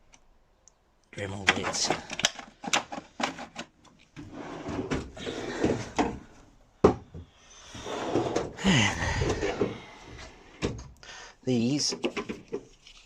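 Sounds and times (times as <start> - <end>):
contents clattering: 1.4 - 3.8
metal drawers sliding: 4.2 - 6.4, 7.8 - 10.3.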